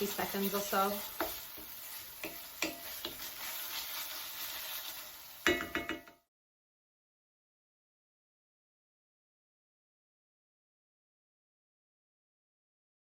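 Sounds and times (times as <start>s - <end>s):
food sizzling in a frying pan: 0.0s - 6.3s
utensil clicking against pan: 1.2s - 3.3s
utensil clattering on pan: 1.2s - 3.5s, 5.4s - 6.2s.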